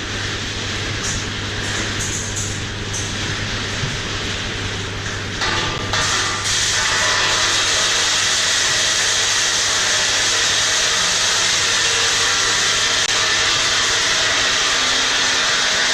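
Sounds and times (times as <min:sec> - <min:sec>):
low motor hum: 0:00.0 - 0:15.9
blower rushing hiss: 0:05.9 - 0:15.9.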